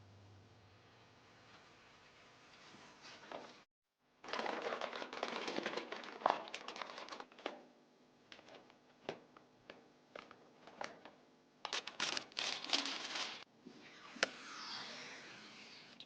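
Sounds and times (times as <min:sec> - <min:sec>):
plastic packaging crinkling: 0:04.2 - 0:07.6, 0:11.7 - 0:13.5.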